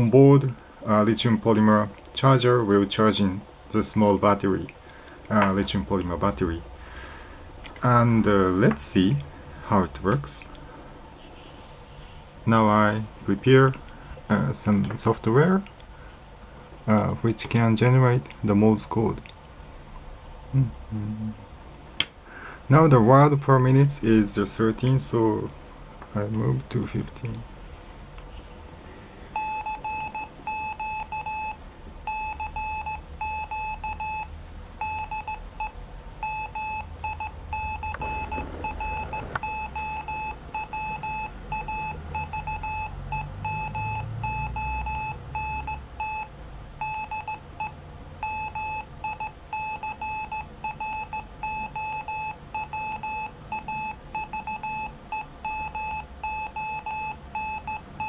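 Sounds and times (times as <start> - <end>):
morse code beeps: 29.4 - 58.0.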